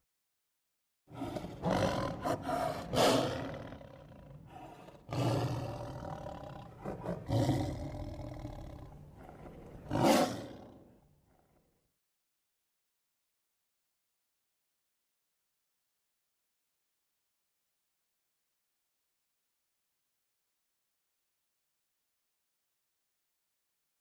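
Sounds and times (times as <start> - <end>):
lion roaring and grunting: 1.1 - 11.0.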